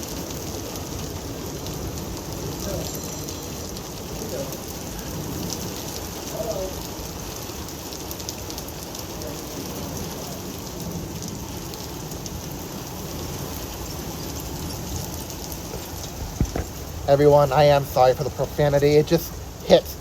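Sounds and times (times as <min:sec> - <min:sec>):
heavy rain pouring: 0:00.0 - 0:20.0
low thunder rumble: 0:10.7 - 0:17.9.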